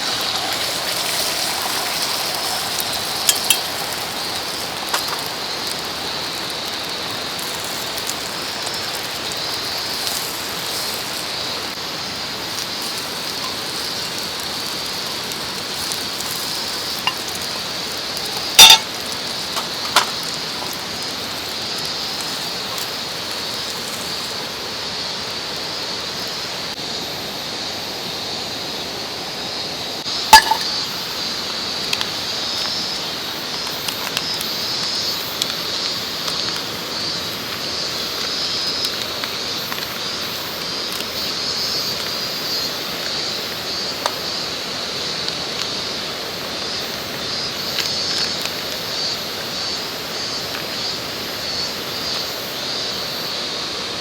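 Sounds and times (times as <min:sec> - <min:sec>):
metal camp gear clinking: 0:00.0 - 0:05.5, 0:13.2 - 0:20.9, 0:30.3 - 0:30.9
mountain stream rushing: 0:00.0 - 0:26.8.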